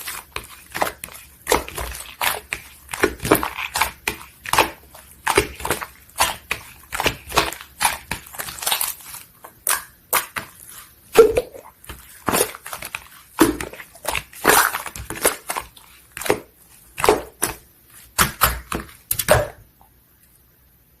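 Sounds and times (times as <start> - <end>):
wet slime squelches: 0.0 - 20.4
air bubbles popping: 11.2 - 11.7.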